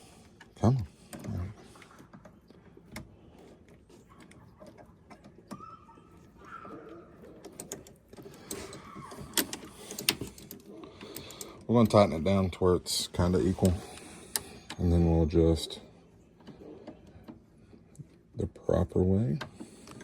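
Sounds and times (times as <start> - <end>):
light clicks and clinks of parts: 7.4 - 12.2.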